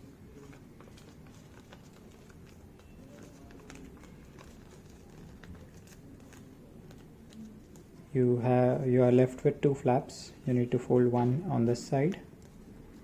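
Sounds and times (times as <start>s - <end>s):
paper crinkling and ticking: 0.0s - 8.1s, 12.0s - 13.0s.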